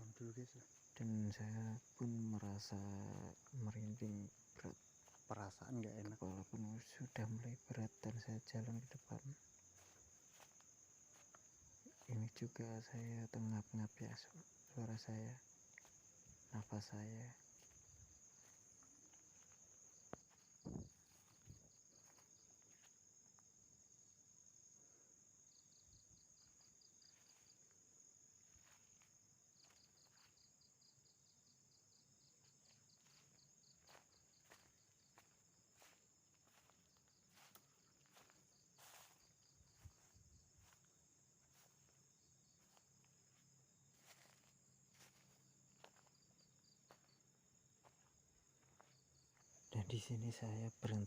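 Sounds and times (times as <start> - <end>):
soft footsteps: 0.0 - 13.5, 14.1 - 23.0, 32.9 - 46.2, 46.9 - 47.2, 47.8 - 49.6
cricket chirps: 0.0 - 51.0
insect chorus drone: 0.0 - 51.0.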